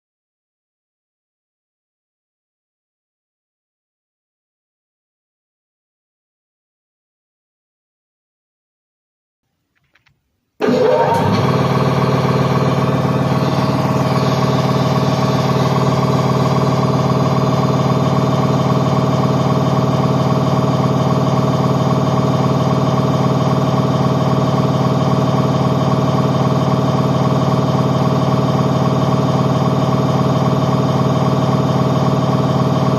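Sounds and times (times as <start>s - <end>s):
air compressor running: 10.6s - 32.9s.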